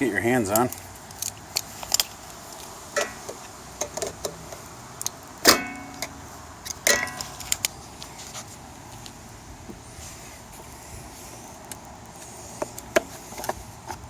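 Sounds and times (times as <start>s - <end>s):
metal tools clinking: 6.8s - 7.7s.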